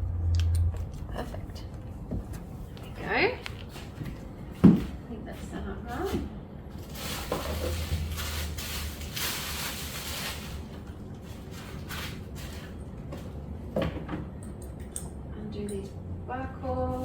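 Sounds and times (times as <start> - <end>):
rustling and handling noise: 0.8 - 14.4.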